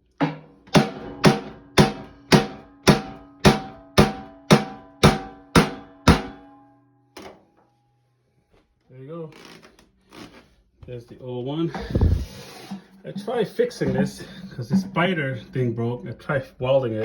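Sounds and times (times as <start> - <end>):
hammer striking metal drum: 0.1 - 6.8.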